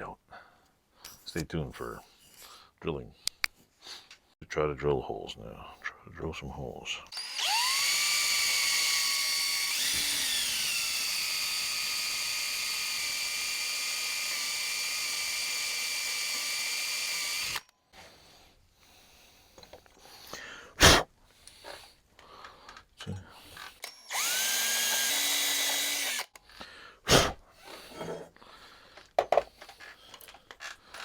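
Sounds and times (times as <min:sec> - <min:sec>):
electric drill whining: 0:07.1 - 0:17.7, 0:23.6 - 0:26.4.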